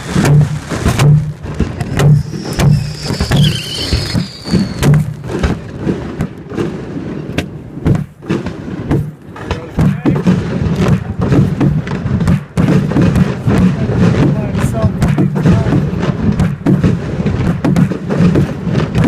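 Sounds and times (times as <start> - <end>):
low rumble: 0.0 - 5.8
fireworks bangs and thumps: 0.0 - 19.0.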